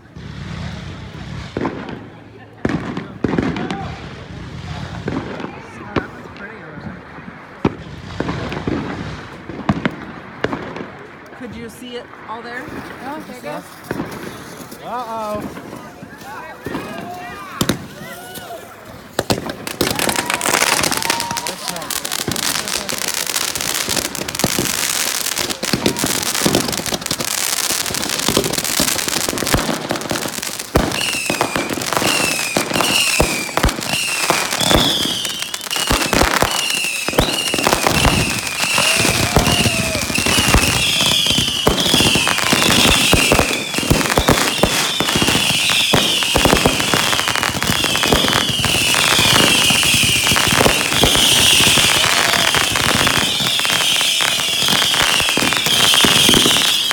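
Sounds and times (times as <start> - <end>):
fireworks bangs and crackling: 0.0 - 56.9
fireworks falling whistles: 12.6 - 56.9.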